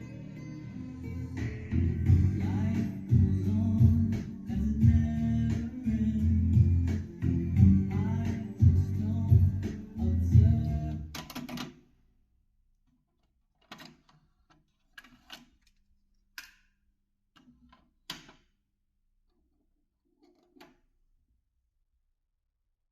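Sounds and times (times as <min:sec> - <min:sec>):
guitar and vocal music: 0:00.0 - 0:11.1.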